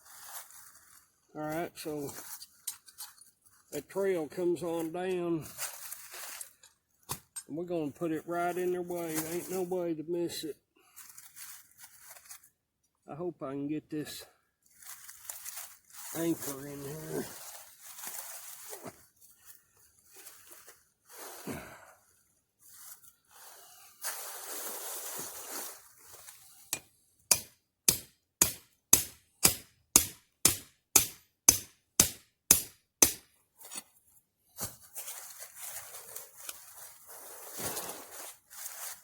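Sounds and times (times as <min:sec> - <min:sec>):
rustling and handling noise: 0:00.0 - 0:09.7, 0:10.8 - 0:12.9, 0:14.4 - 0:21.4, 0:22.0 - 0:27.4, 0:33.2 - 0:39.0
hammer striking metal anchor: 0:26.7 - 0:33.3.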